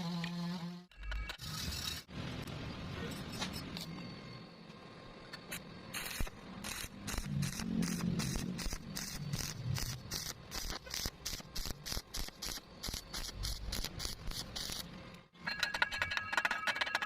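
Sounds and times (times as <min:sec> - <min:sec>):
welding arc crackling hiss: 0:05.4 - 0:14.9.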